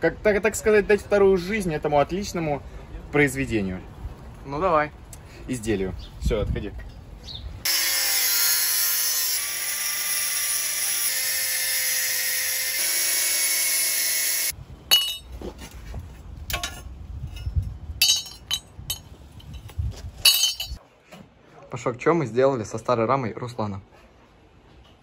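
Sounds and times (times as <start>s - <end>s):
angle grinder cutting metal: 7.7s - 14.6s
metal knocks and clinks: 14.9s - 15.3s, 16.5s - 20.8s.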